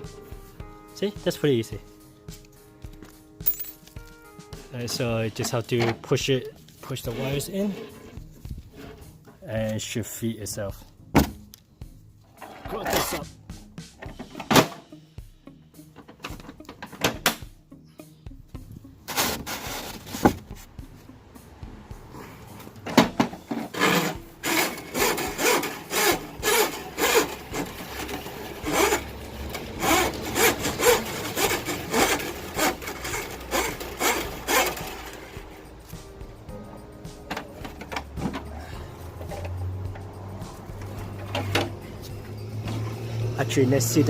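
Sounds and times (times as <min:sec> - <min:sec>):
drain snake cable scraping: 0:06.8 - 0:09.4, 0:19.1 - 0:20.4, 0:23.6 - 0:35.5.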